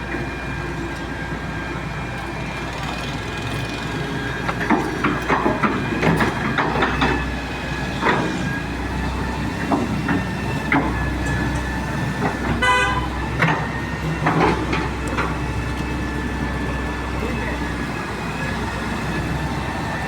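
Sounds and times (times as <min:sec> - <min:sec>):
diesel engine running: 0:00.0 - 0:20.0
vehicle horn honk: 0:12.6 - 0:13.2.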